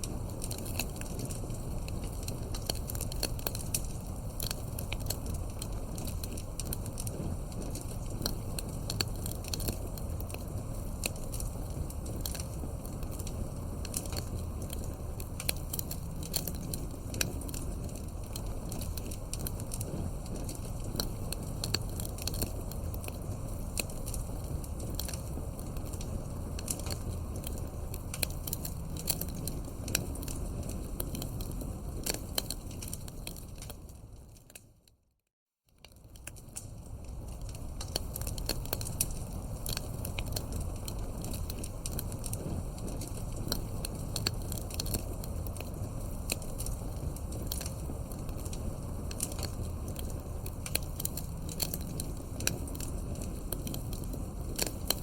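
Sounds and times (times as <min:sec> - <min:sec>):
wood fire crackling and popping: 0:00.0 - 0:34.9, 0:35.7 - 0:55.0.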